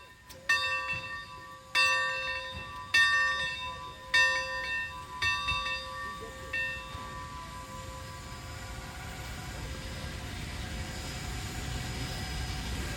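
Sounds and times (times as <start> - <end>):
locomotive bell ringing: 0.0 - 9.4.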